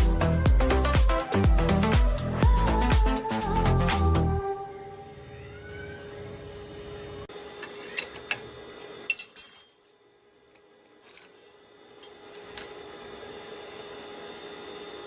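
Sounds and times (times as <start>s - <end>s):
electrical hum: 0.1s - 9.2s
small metal objects clinking: 9.1s - 9.9s.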